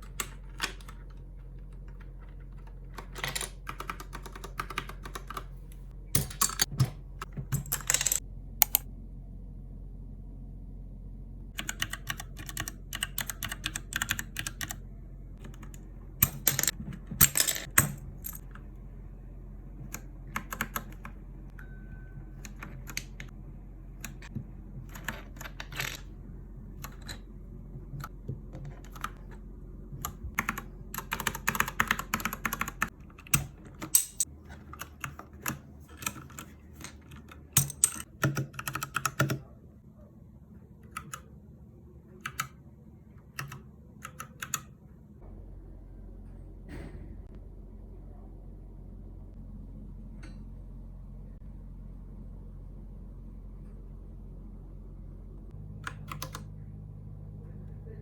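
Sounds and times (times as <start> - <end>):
mechanical keyboard typing: 0.0 - 5.5, 11.6 - 14.8, 19.9 - 21.2, 22.4 - 23.3, 24.0 - 26.1, 28.0 - 29.3, 30.0 - 39.4, 40.9 - 41.3, 42.2 - 42.6, 43.3 - 44.8, 55.9 - 56.5.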